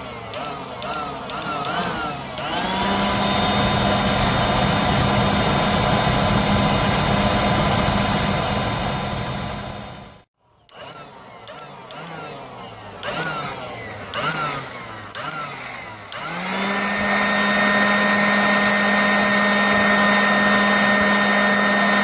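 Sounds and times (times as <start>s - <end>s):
leaf blower whining: 0.0s - 22.0s.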